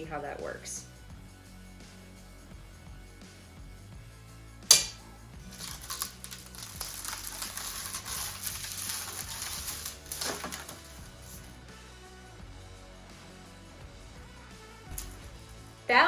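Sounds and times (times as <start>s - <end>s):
sharp knock: 4.7s - 5.0s
plastic film peeling crackle: 4.8s - 11.5s.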